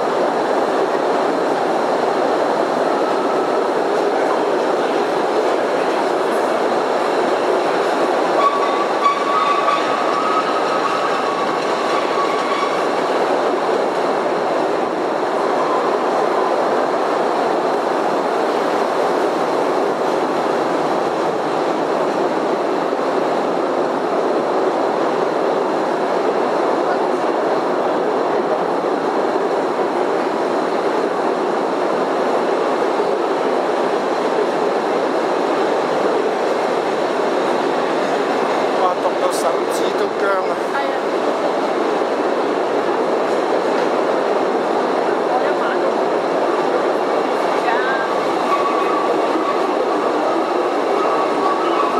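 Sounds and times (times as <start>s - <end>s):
train wheels rumbling: 0.0s - 24.2s, 29.6s - 51.9s
wheel squeal: 8.4s - 13.0s.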